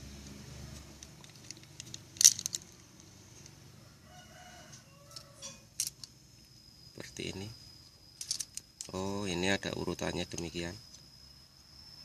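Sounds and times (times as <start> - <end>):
rooster crowing faintly: 3.6 - 5.7.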